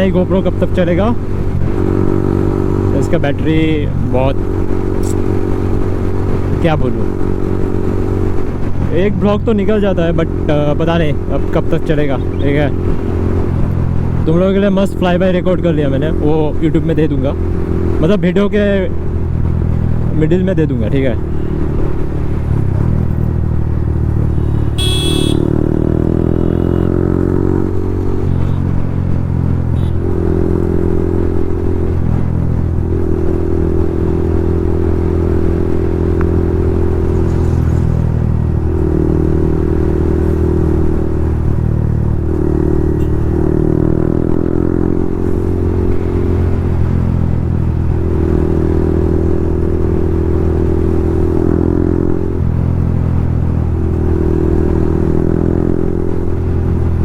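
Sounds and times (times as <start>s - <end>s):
motorcycle engine with loud exhaust: 0.0s - 57.0s
short high beep: 24.4s - 25.5s.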